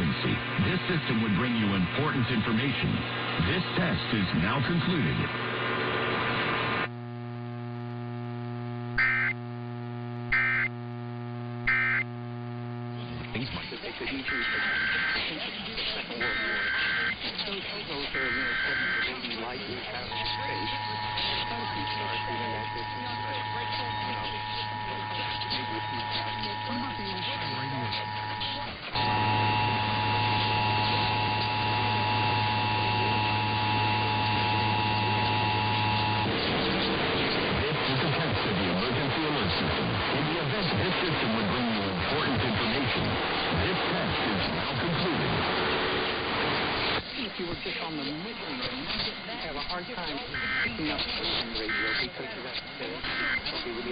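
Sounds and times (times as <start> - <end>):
mains hum: 0.0 - 53.9
screechy data bursts: 9.0 - 9.5, 10.3 - 10.8, 11.5 - 36.8, 47.6 - 53.9.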